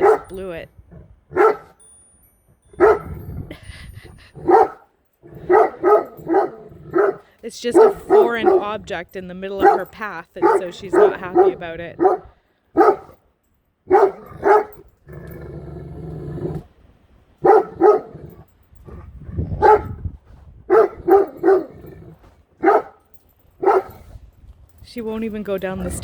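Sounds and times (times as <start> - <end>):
dog barking deeply: 0.0 - 0.6, 1.3 - 1.8, 2.8 - 3.2, 4.4 - 8.8, 9.6 - 13.2, 13.9 - 14.9, 17.4 - 23.0, 23.6 - 24.1
dog growling low: 5.2 - 7.3, 15.0 - 16.8, 18.0 - 20.5, 21.2 - 22.4.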